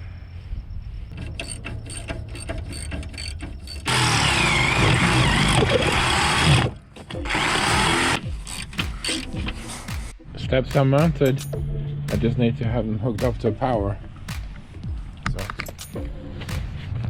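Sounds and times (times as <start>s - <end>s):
power drill running: 2.7s - 8.2s.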